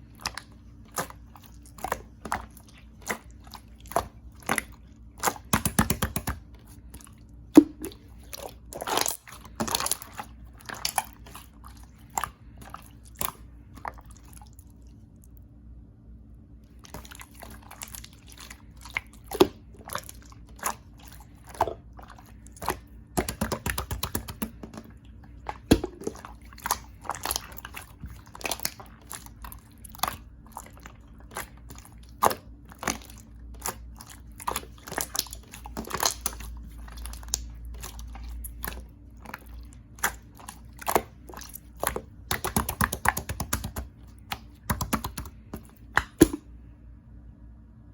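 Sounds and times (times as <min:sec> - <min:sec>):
air bubbles popping in slime: 0:07.6 - 0:08.1, 0:23.2 - 0:24.8, 0:25.5 - 0:27.4, 0:41.7 - 0:46.4.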